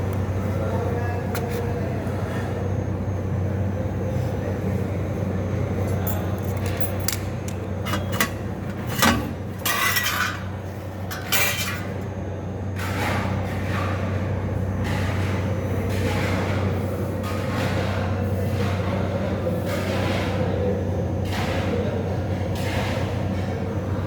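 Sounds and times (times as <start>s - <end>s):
low machine hum: 0.0s - 24.0s
metal tools clinking: 5.8s - 12.0s.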